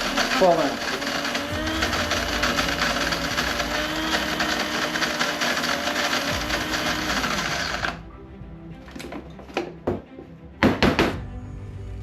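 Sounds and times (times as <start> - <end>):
electric coffee grinder running: 0.0 - 8.0.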